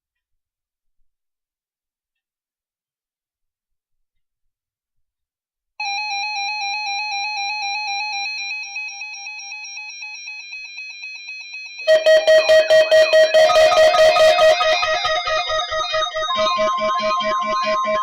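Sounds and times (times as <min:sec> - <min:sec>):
electronic tone trilling: 0:11.9 - 0:18.0.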